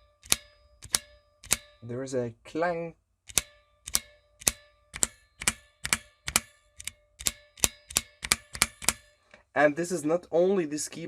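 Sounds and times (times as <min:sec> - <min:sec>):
keyboard switch clanging: 0:00.1 - 0:01.8, 0:03.3 - 0:09.1.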